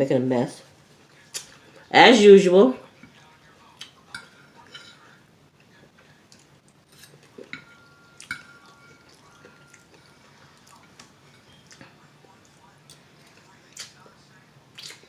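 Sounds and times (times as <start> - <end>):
clinks against a plate: 4.1 - 5.0, 6.9 - 12.0
plate ringing: 7.4 - 11.8.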